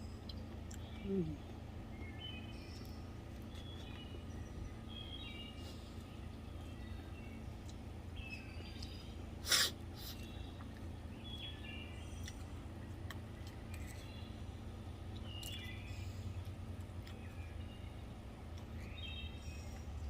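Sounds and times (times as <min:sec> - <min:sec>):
birds chirping: 0:00.0 - 0:20.0
steady low hum: 0:00.0 - 0:20.0.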